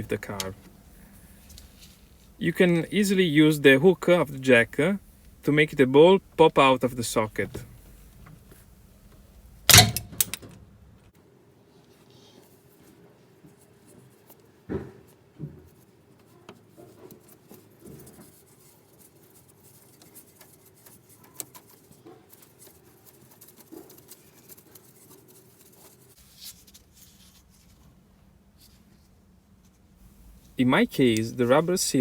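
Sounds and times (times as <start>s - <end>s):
faint steady hum: 0.0s - 11.1s, 27.5s - 32.0s.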